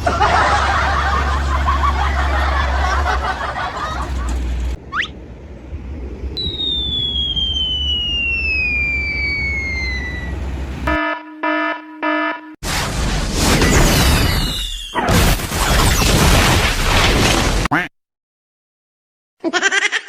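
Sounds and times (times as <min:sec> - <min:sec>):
low steady hum: 0:00.0 - 0:11.0
falling whistle: 0:06.4 - 0:10.5, 0:14.1 - 0:15.0
rising whistle: 0:06.4 - 0:10.6.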